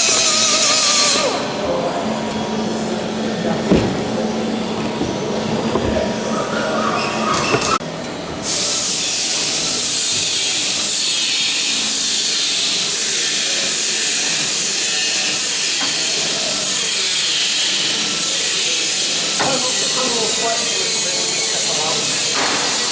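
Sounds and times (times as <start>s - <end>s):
workshop low hum: 0.0s - 7.8s.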